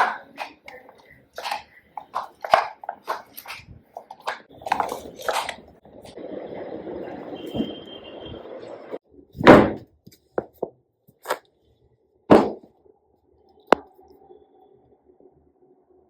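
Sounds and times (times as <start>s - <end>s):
household knocks and thuds: 9.4s - 9.8s, 12.3s - 12.6s.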